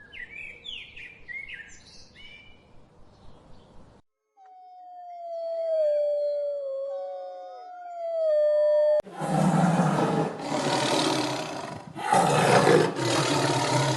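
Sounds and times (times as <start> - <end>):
lion roaring: 9.1 - 13.9.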